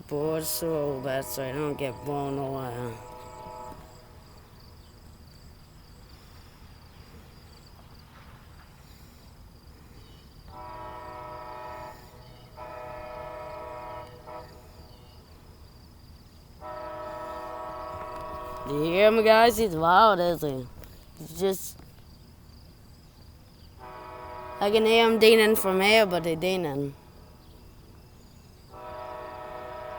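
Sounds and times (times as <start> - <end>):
loud train horn blasts: 0.4 - 4.5, 10.5 - 15.1, 16.6 - 19.4, 23.8 - 26.5, 28.7 - 29.9.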